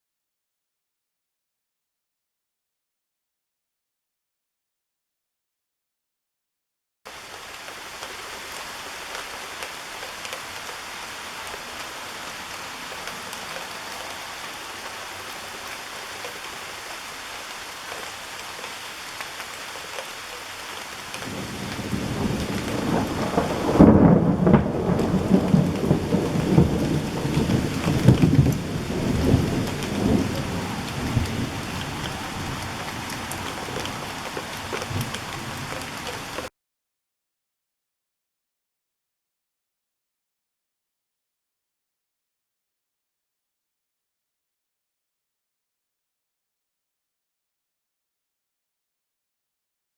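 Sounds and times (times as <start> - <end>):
steady rain falling: 7.1 - 36.5
thunder rumbling: 21.2 - 36.3.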